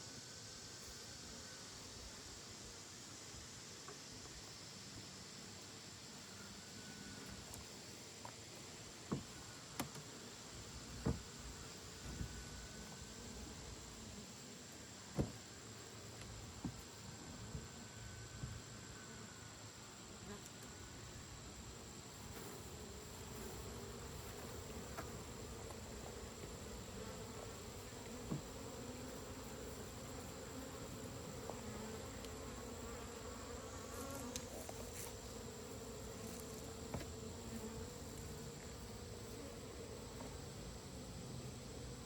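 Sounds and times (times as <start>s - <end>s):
honey bees buzzing: 22.2s - 42.0s.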